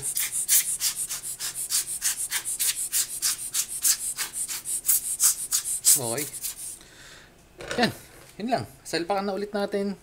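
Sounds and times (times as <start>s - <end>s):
quick hissing cleaning strokes: 0.0s - 6.8s.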